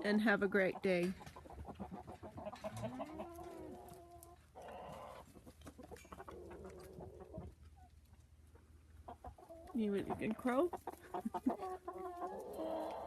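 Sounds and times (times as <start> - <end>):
young chickens clucking: 0.0 - 13.0.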